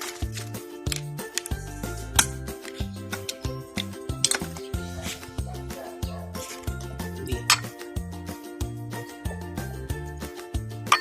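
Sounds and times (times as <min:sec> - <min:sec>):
instrumental music with steady beat: 0:00.0 - 0:11.0.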